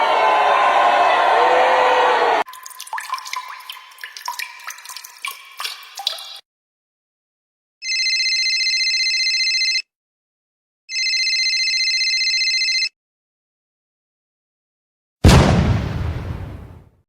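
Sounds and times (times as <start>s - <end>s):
telephone ringing: 7.8s - 9.8s, 10.9s - 12.9s.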